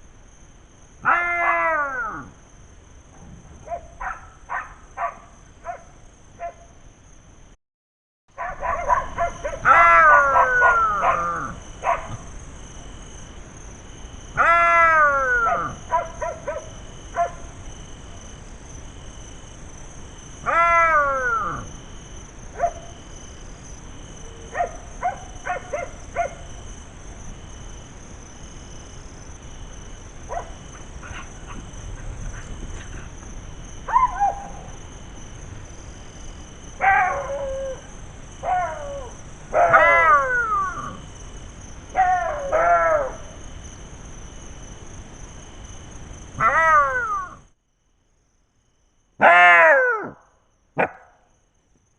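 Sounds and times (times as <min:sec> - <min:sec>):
jackals wailing: 0:01.0 - 0:02.4, 0:09.3 - 0:11.6, 0:14.4 - 0:15.9, 0:20.4 - 0:21.7, 0:38.4 - 0:41.0, 0:46.4 - 0:47.4, 0:49.2 - 0:50.2
jackal yips and barks: 0:03.6 - 0:06.7, 0:08.4 - 0:12.2, 0:14.4 - 0:17.4, 0:24.5 - 0:26.4, 0:33.9 - 0:34.7, 0:36.8 - 0:37.8, 0:38.4 - 0:41.0, 0:42.0 - 0:43.2, 0:46.4 - 0:47.4, 0:49.2 - 0:50.2, 0:50.8 - 0:51.2.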